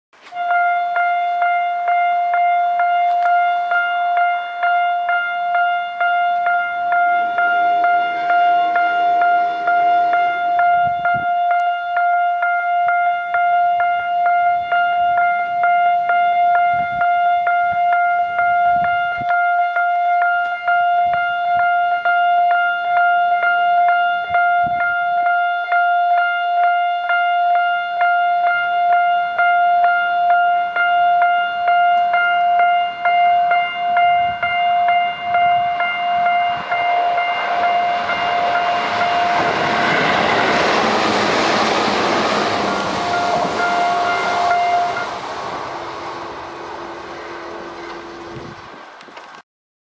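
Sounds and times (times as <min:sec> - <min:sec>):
level crossing warning bells dinging: 0:00.2 - 0:49.0
sustained ringing tone: 0:00.4 - 0:48.8
train wheels rumbling on rails: 0:33.0 - 0:49.4.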